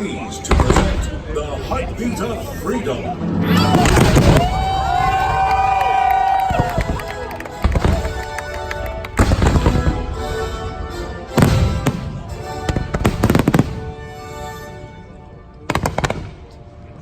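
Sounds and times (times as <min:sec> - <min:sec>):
music: 0:00.0 - 0:17.0
fireworks booming: 0:00.4 - 0:05.8, 0:06.5 - 0:14.0
crackling firework pops: 0:06.5 - 0:10.0, 0:15.7 - 0:16.4.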